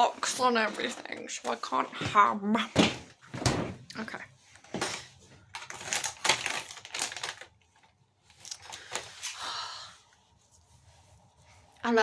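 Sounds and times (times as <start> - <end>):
plastic packaging crinkling: 5.5 - 9.4.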